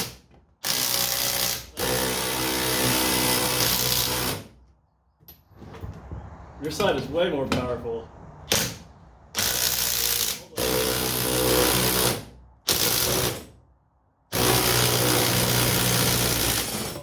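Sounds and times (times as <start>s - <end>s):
impact wrenches hammering: 0.0s - 4.5s, 8.5s - 13.6s, 14.3s - 17.0s.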